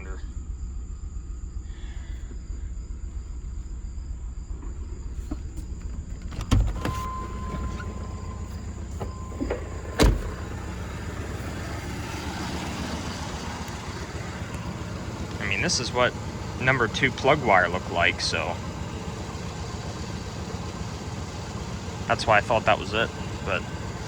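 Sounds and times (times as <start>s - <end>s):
engine running with low pulse: 0.0s - 24.0s.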